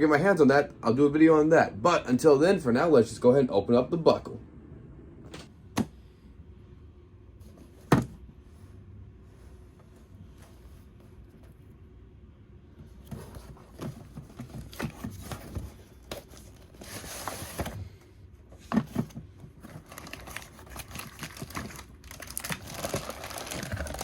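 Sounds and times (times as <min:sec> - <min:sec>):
plastic and cardboard crinkling: 0:12.9 - 0:18.0, 0:18.6 - 0:24.0.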